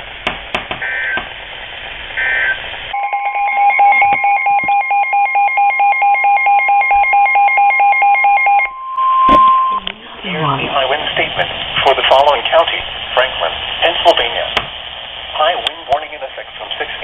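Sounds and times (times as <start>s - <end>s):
radio hiss: 0.8s - 3.0s, 9.7s - 17.0s
digital data tones: 2.2s - 9.9s
pulsing two-pitch beep: 3.0s - 9.9s.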